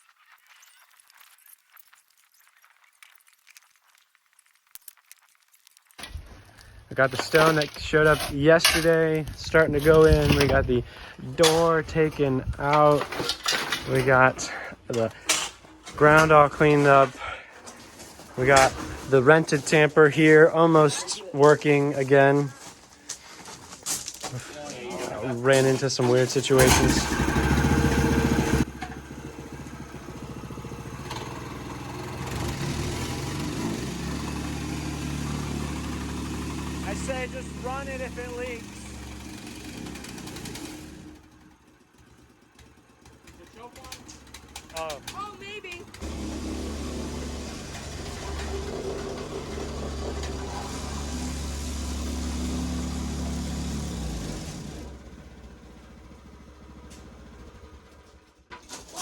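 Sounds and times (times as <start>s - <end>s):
small gasoline engine idling: 26.6s - 58.4s.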